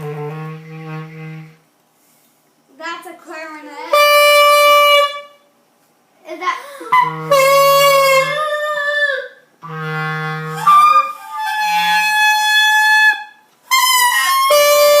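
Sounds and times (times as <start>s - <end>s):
clarinet honking: 3.9s - 5.5s, 6.9s - 15.0s.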